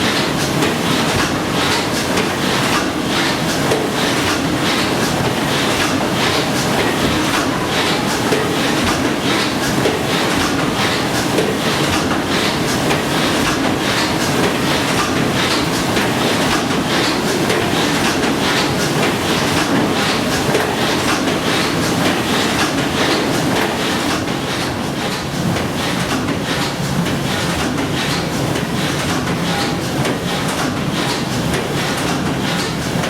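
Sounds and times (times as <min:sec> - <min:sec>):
steam engine rhythmic clatter: 0:00.0 - 0:33.0.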